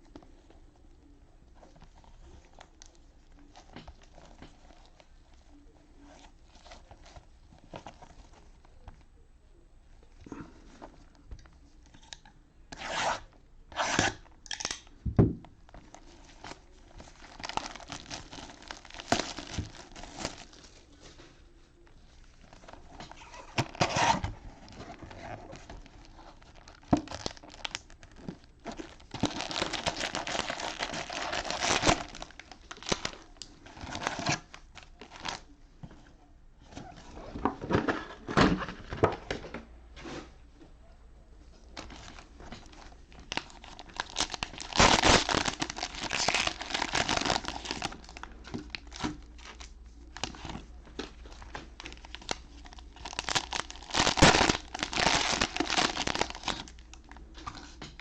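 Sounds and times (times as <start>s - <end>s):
plastic wrap crinkling: 15.6s - 35.6s, 41.8s - 58.0s
plastic wrap ripping: 15.7s - 20.7s, 22.4s - 35.4s, 41.8s - 50.6s, 51.3s - 58.0s.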